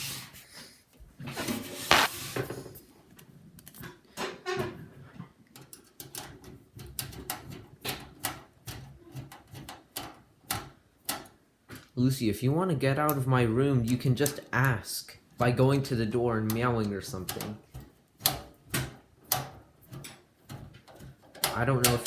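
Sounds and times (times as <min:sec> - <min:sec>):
loud scraping rustle: 0:01.2 - 0:02.8.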